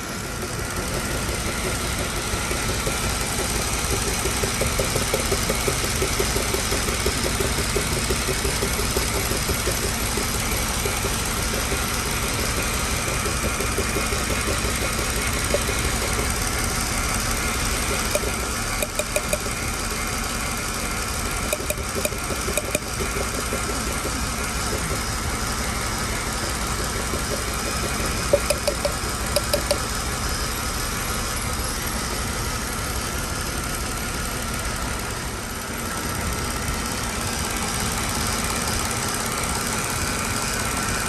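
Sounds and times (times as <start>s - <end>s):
car engine idling: 0.0s - 41.0s
sharp clicks: 17.5s - 20.1s, 21.1s - 25.3s, 25.9s - 29.9s.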